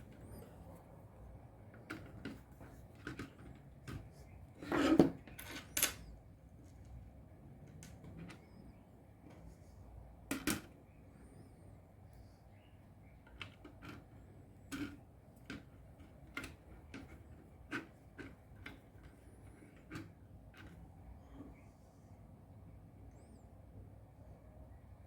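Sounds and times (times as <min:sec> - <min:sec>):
faint low hum: 0:00.0 - 0:25.0.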